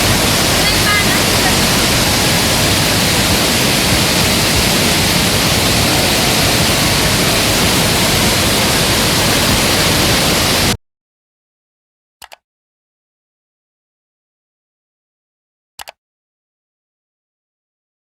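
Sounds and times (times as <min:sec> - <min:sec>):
waterfall rushing: 0:00.0 - 0:10.8.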